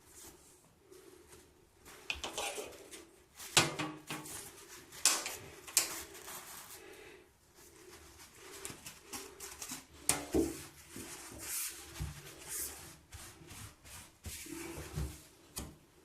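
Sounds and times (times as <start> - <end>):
gloved hands rubbing plastic strip: 1.3 - 7.0.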